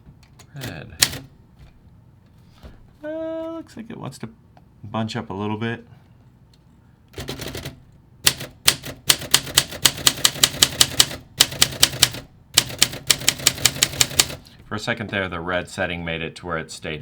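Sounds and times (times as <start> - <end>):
typewriter key strikes: 7.2 - 14.4
typewriter rasp: 7.2 - 14.4.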